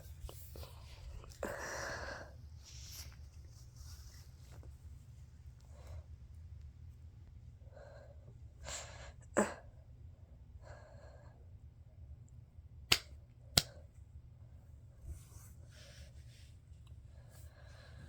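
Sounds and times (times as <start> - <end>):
person breathing heavily: 1.3 - 2.4.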